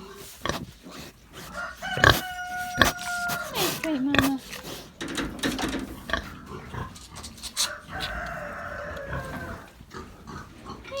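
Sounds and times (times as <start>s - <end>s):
farm animal call: 1.4s - 4.8s, 6.0s - 11.0s
knocks and clatter of feeding: 1.9s - 11.0s.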